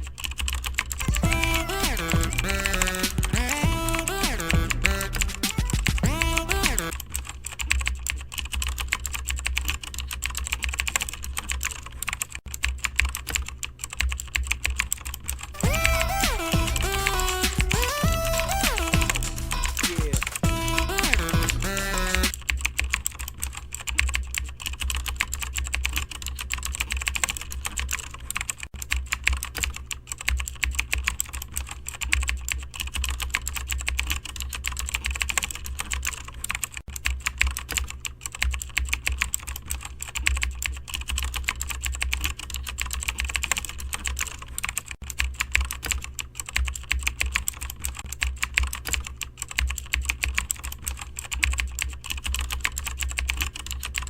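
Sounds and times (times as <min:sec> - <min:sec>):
keyboard typing: 0:00.0 - 0:54.0
steady low hum: 0:01.1 - 0:07.6, 0:15.6 - 0:23.9.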